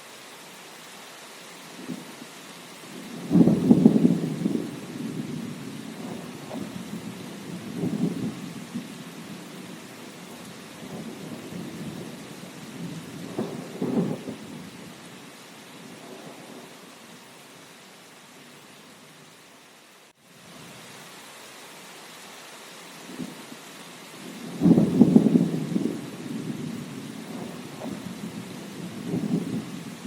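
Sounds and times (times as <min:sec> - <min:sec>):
steady rain: 0:00.0 - 0:30.0
rolling thunder: 0:03.0 - 0:14.7, 0:24.4 - 0:30.0.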